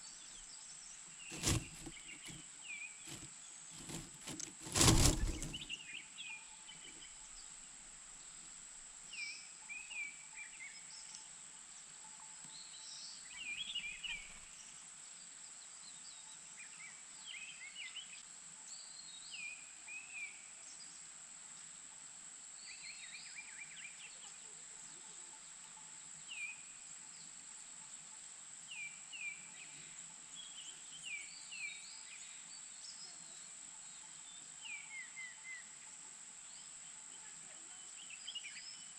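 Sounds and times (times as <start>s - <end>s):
small birds chirping: 0.0s - 7.2s.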